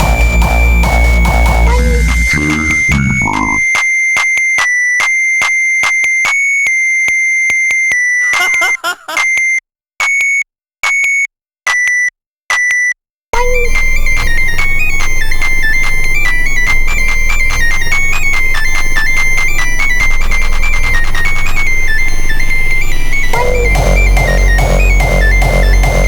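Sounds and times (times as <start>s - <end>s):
hardstyle music with heavy bass: 0.0s - 3.6s, 13.4s - 26.0s.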